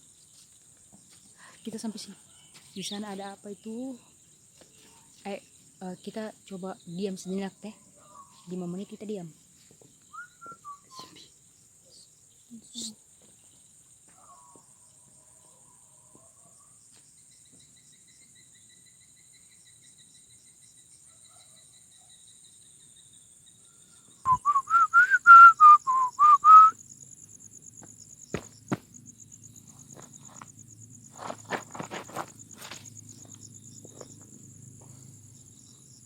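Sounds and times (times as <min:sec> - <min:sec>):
crickets trilling: 0:00.0 - 0:36.0
short whistled notes: 0:24.3 - 0:26.8.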